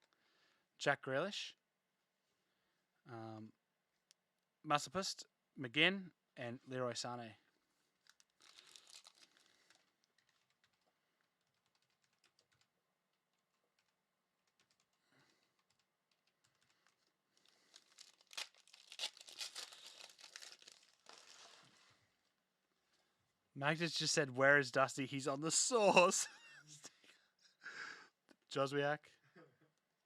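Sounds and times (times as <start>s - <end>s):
wrappers crinkling: 7.9s - 22.4s.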